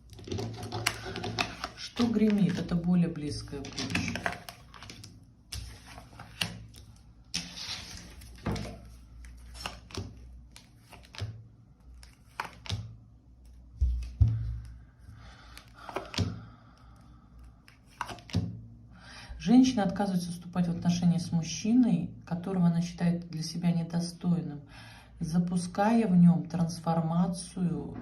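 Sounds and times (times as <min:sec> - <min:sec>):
cards rustling: 0:00.0 - 0:12.9, 0:15.5 - 0:16.4, 0:17.4 - 0:18.4
cards clicking and tapping: 0:00.1 - 0:02.9, 0:03.6 - 0:12.9, 0:13.5 - 0:14.8, 0:15.5 - 0:16.4, 0:17.6 - 0:18.5.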